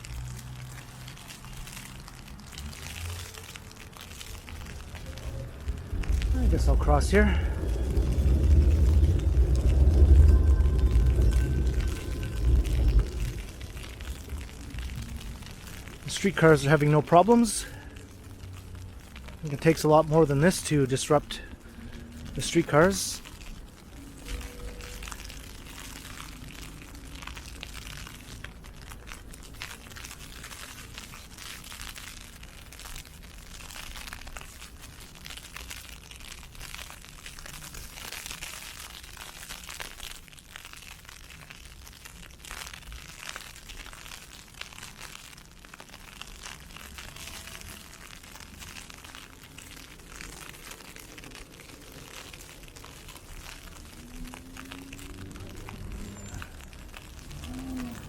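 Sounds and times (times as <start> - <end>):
ice pellets pattering on umbrella: 0.0 - 58.0
low wind rumble: 3.5 - 33.6, 44.0 - 58.0.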